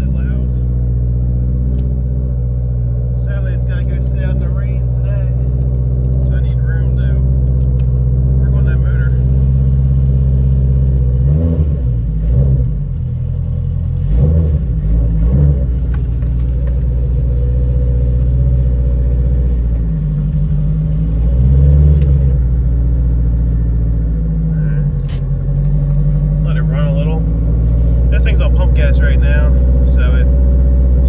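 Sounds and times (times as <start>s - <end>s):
race car engine idling and blipping: 0.0s - 31.0s.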